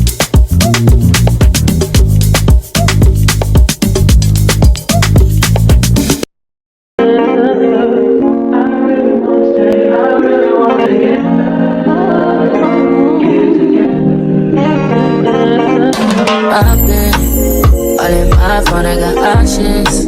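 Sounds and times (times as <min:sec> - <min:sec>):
mellow song with guitar and organ: 0:07.0 - 0:20.0.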